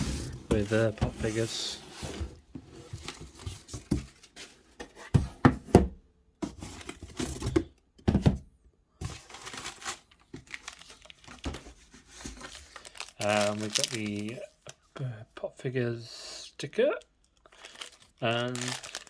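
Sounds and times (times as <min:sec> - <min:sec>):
packaging crinkling and rustling: 0:09.0 - 0:15.1, 0:17.0 - 0:19.0
packaging tearing: 0:09.2 - 0:11.5, 0:12.2 - 0:15.0, 0:17.2 - 0:19.0.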